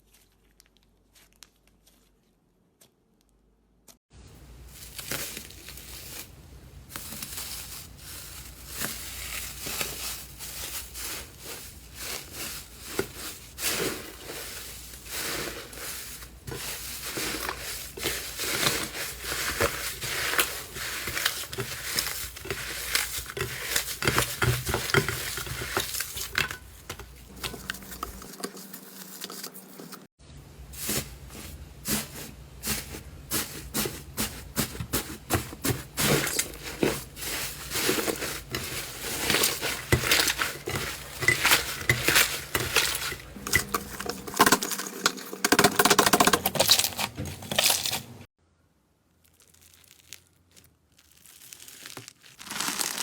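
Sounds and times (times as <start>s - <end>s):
slime crackling and popping: 49.2s - 53.0s.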